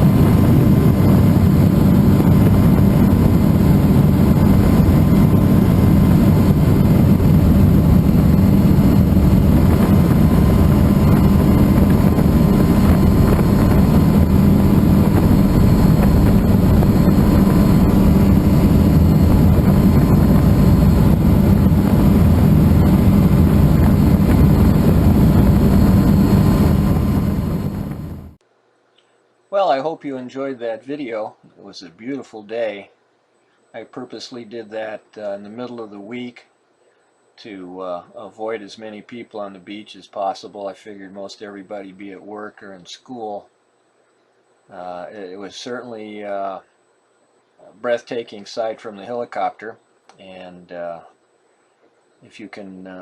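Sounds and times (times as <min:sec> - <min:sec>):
helicopter turbine and rotor drone: 0:00.0 - 0:28.4
faint turbine whine: 0:00.0 - 0:53.0.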